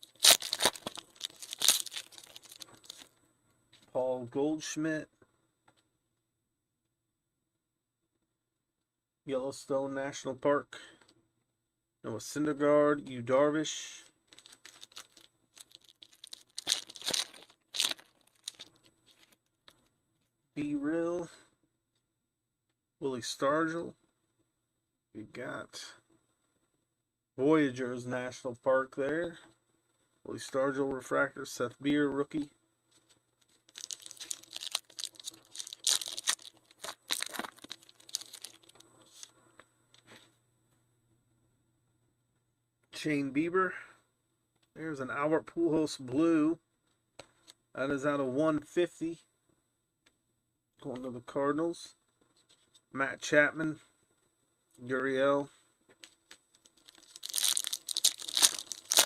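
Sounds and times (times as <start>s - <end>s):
foil wrapper crinkling and tearing: 0.0s - 3.1s, 14.3s - 19.4s, 33.5s - 39.3s, 56.3s - 59.0s.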